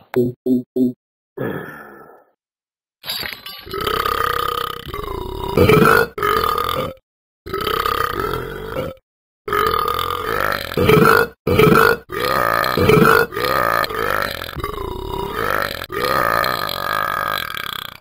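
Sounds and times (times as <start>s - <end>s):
man belching: 3.7s - 18.0s.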